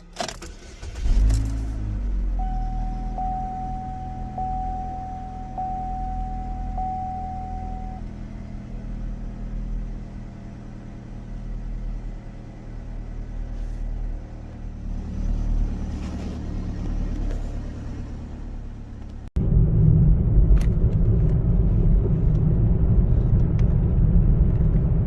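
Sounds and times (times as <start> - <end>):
car engine and road hum: 0.0 - 25.0.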